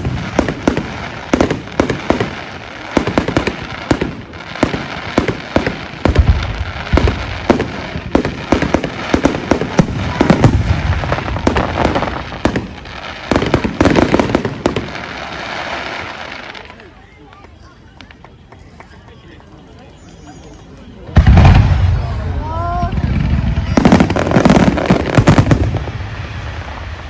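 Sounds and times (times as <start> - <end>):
deep firework booms: 0.0 - 15.4, 21.2 - 27.0
fireworks bangs and crackles: 0.0 - 27.0.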